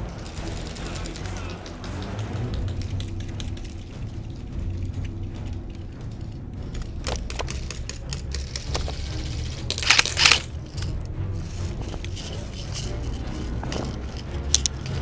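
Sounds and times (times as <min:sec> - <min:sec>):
low rumble: 0:00.0 - 0:15.0
airsoft gunfire clicks: 0:09.7 - 0:10.5.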